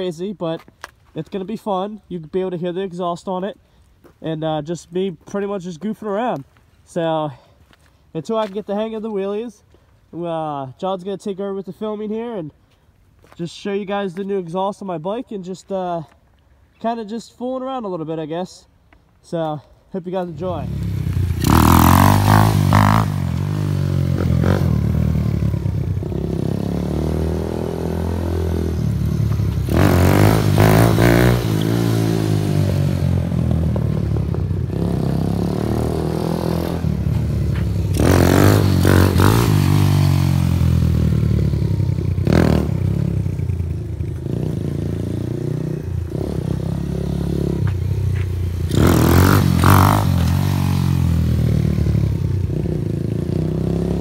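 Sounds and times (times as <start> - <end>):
motorcycle engine revving: 20.3 - 54.0.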